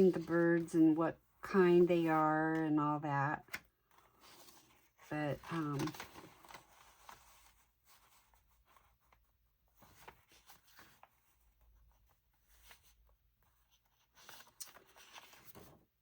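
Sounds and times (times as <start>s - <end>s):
paper rustling: 3.4s - 15.9s.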